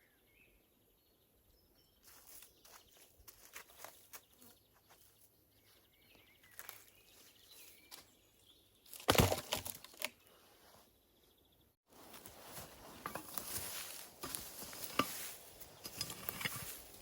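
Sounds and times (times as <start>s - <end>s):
rustling crunch of dry vegetation: 2.0s - 9.0s, 11.9s - 17.0s.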